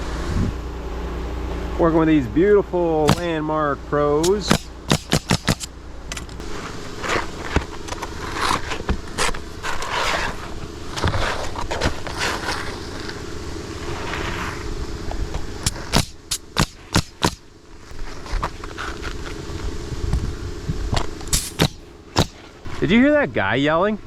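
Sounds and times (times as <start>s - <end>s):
roofing nailer firing: 3.1s - 3.4s, 4.2s - 6.4s, 15.6s - 17.5s, 21.3s - 22.6s
shingles scraping and rustling: 4.2s - 14.7s, 17.8s - 19.6s.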